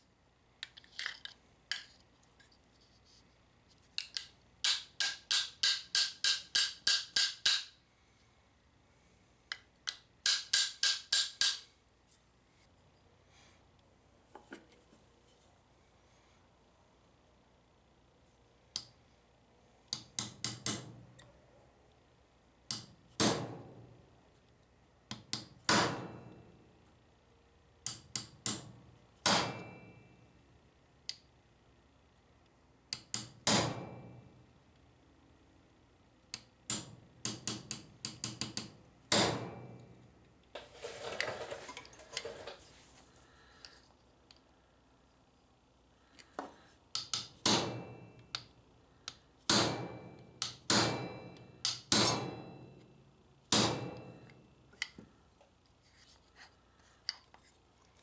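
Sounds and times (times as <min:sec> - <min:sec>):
hammer tapping on metal: 0:04.6 - 0:07.7, 0:09.5 - 0:11.7, 0:36.4 - 0:39.5, 0:49.1 - 0:52.8.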